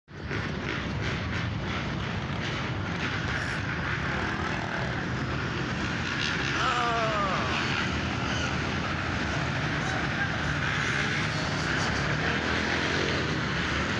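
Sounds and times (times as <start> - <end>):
dirt bike engines revving: 0.2 - 13.9
voices: 6.4 - 8.1.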